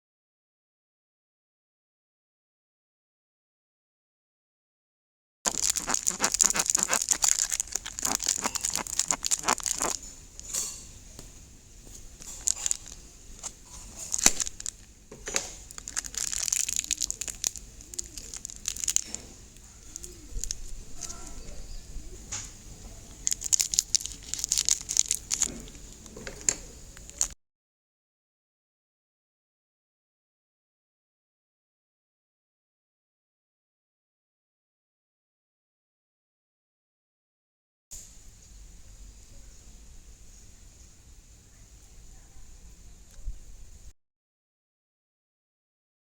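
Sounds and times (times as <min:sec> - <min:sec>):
slime crackling and clicking: 0:05.5 - 0:10.8, 0:12.2 - 0:21.2, 0:23.1 - 0:27.4.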